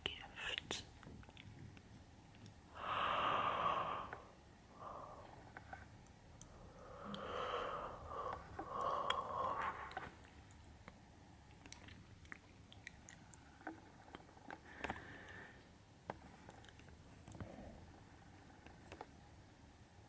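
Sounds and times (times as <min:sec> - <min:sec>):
breathy open-mouthed breaths: 0:02.7 - 0:10.2, 0:14.6 - 0:15.7
faint wet mouth clicks: 0:11.5 - 0:13.4.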